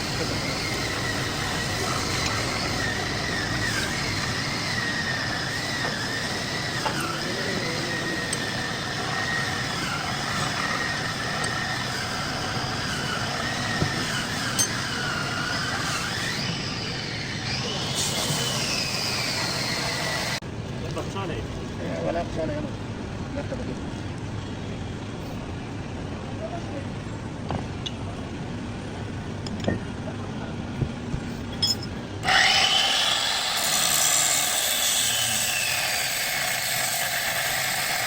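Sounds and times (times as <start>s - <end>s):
metal lathe running: 31.6s - 38.0s.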